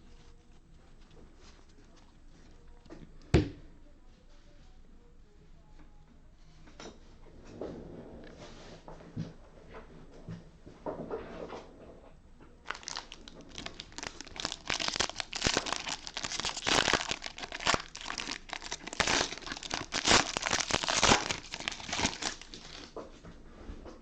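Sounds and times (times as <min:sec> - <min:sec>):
foil wrapper tearing and crinkling: 0:12.7 - 0:22.9.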